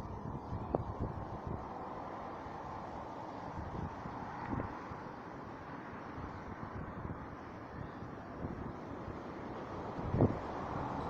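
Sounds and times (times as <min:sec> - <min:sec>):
wind buffeting microphone: 0:00.0 - 0:01.8, 0:06.5 - 0:11.0
outdoor background rumble and hiss: 0:00.0 - 0:11.0.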